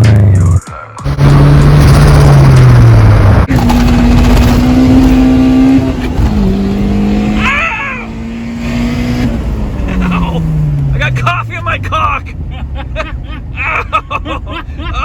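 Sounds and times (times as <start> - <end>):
car engine revving: 1.0 - 13.0.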